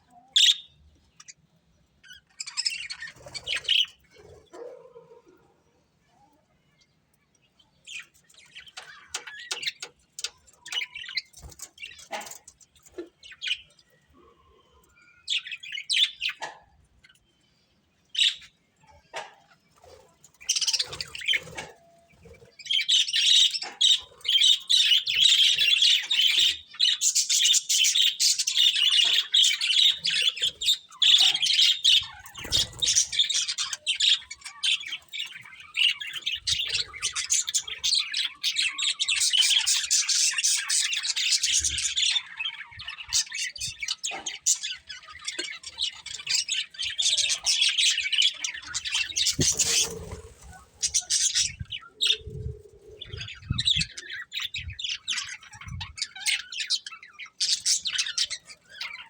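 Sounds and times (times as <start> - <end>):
budgerigars chirping: 22.9 - 52.2.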